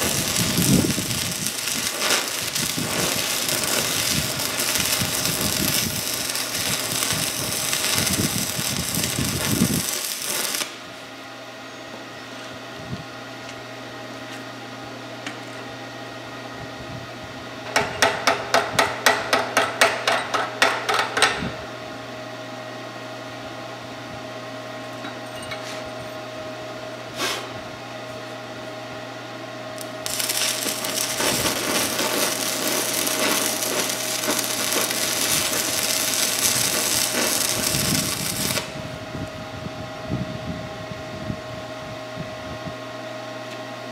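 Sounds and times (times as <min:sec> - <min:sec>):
welding arc crackling and sputtering: 0:00.0 - 0:10.9, 0:29.8 - 0:38.8
steady low hum: 0:00.0 - 0:18.1, 0:21.4 - 0:43.9.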